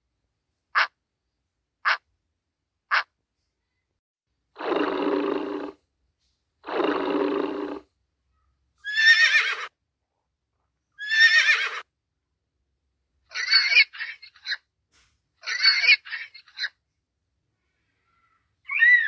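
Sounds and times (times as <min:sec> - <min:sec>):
high wavering animal calls: 0:13.3 - 0:14.6, 0:18.1 - 0:19.0.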